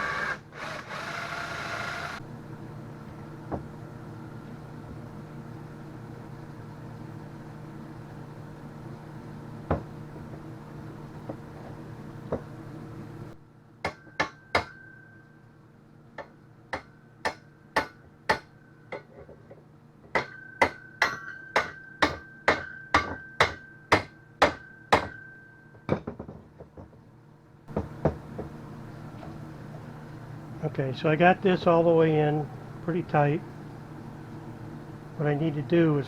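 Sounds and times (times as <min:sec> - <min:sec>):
hammer striking metal bar: 0:13.8 - 0:15.0, 0:16.2 - 0:19.1, 0:20.1 - 0:26.1.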